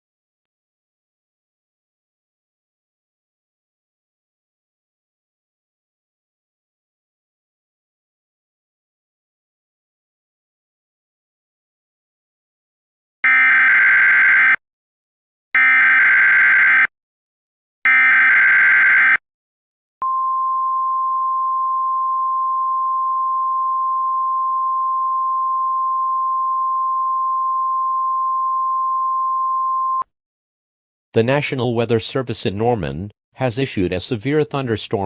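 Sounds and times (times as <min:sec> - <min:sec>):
steady warning alarm tone: 0:13.2 - 0:14.6, 0:15.6 - 0:16.9, 0:17.9 - 0:19.2.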